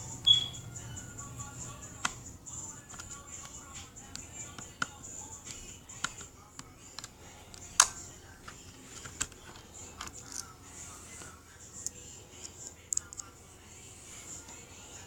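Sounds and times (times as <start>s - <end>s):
laptop parts clicking and tapping: 2.9s - 10.5s.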